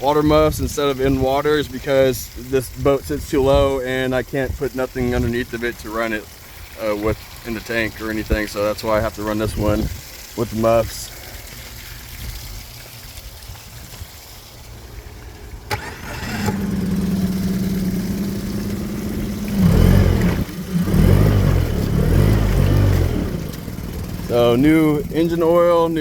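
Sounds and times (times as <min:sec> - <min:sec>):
outboard engine running: 0:14.8 - 0:26.0
starter motor whine: 0:15.6 - 0:25.4.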